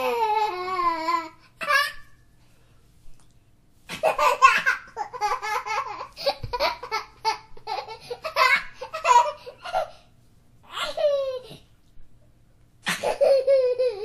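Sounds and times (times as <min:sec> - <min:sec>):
baby laughing and squealing: 0:03.9 - 0:09.9, 0:10.7 - 0:11.6, 0:12.8 - 0:14.0.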